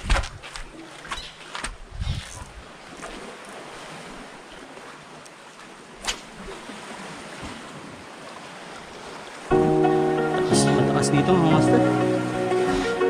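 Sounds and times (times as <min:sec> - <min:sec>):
small waves washing on shore: 0:00.0 - 0:09.6
wind: 0:00.0 - 0:10.3.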